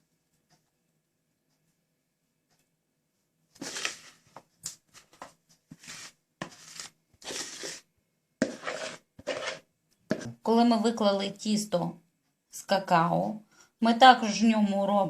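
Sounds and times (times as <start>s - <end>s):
spoon scraping batter from bowl: 3.6s - 10.4s.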